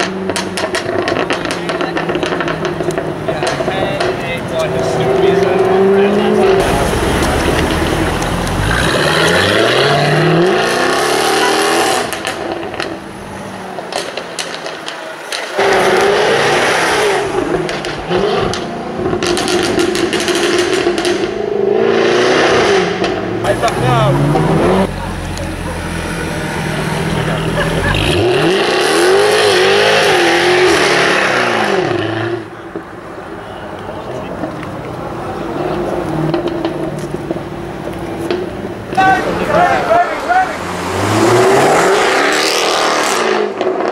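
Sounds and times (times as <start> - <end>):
exhaust pops and cracks: 0.0 - 4.7, 6.4 - 9.4, 12.0 - 13.1, 13.7 - 16.2, 17.4 - 21.4, 33.7 - 39.1
car engine accelerating: 0.0 - 43.9.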